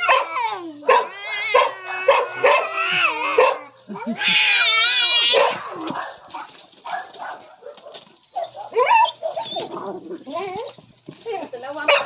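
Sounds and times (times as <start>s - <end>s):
cat growling cries: 0.0s - 6.0s
cats yowling: 0.0s - 6.0s, 8.4s - 10.8s.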